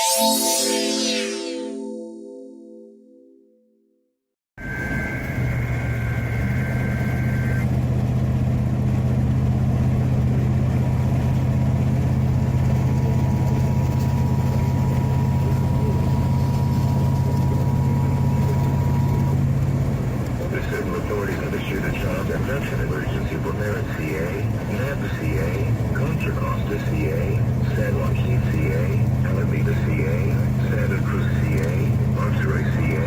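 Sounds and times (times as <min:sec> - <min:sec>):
car engine and road rumble: 0:04.6 - 0:33.0.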